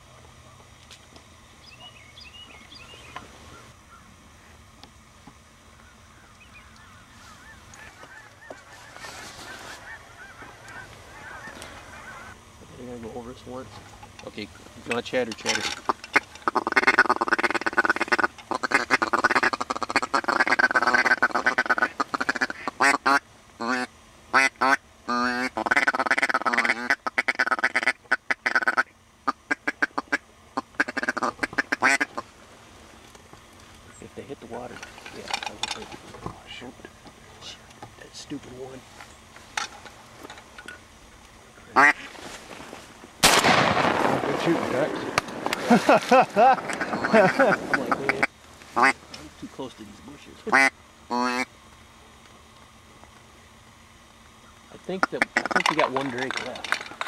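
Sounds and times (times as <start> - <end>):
waterfowl honking: 5.8 - 12.4, 14.3 - 32.4, 41.5 - 43.6, 44.4 - 49.1, 50.4 - 51.5, 54.4 - 57.0
duck quacking rapidly: 15.9 - 32.2, 41.8 - 42.1, 46.4 - 49.0, 50.5 - 51.5.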